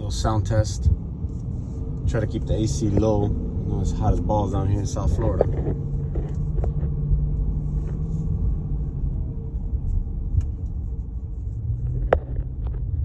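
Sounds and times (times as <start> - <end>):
low exhaust rumble in car cabin: 0.0 - 13.0.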